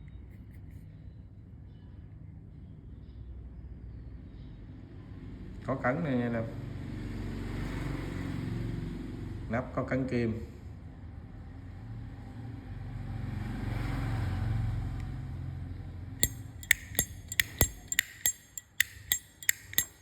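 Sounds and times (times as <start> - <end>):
lighter metallic clicks: 16.2 - 20.0.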